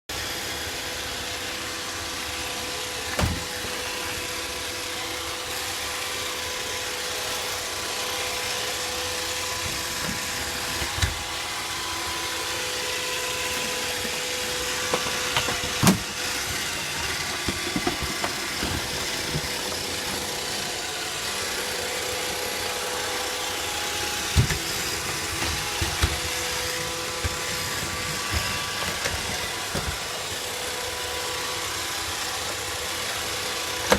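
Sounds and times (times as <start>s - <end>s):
robot vacuum cleaner whirring: 0.1s - 33.9s.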